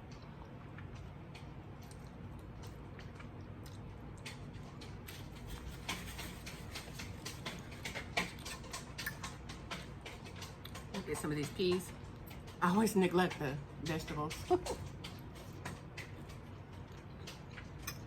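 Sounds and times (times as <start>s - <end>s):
wet chewing and sucking: 0.0s - 12.6s, 13.3s - 18.0s.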